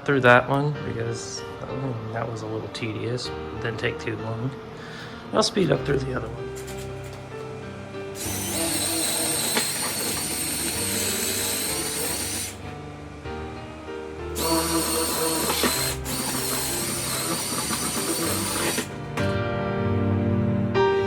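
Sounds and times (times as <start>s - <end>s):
background music: 0.0s - 21.0s
power drill whirring: 6.5s - 7.4s, 8.1s - 12.7s, 14.4s - 19.4s.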